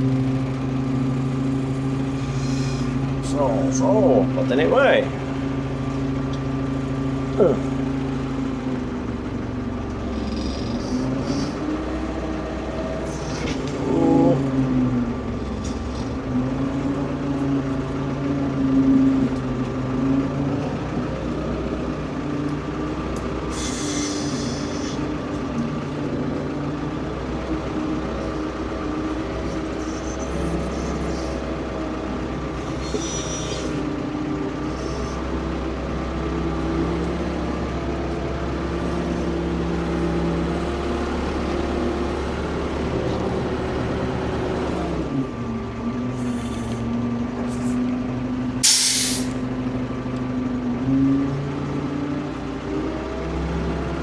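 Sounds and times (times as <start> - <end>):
excavator engine running: 0.0 - 54.0
short hisses: 2.2 - 3.0, 10.1 - 11.8, 13.0 - 13.8, 15.6 - 16.2, 23.5 - 25.2, 28.2 - 31.6, 32.5 - 33.9, 34.6 - 35.2, 46.2 - 47.9, 48.6 - 49.5.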